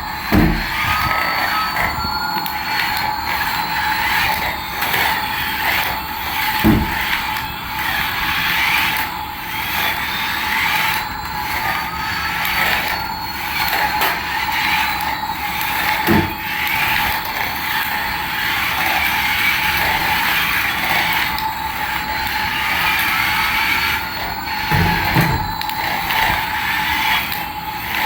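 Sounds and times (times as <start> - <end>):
toy aircraft motor whine: 0.0 - 28.0
short thumps: 24.7 - 25.6.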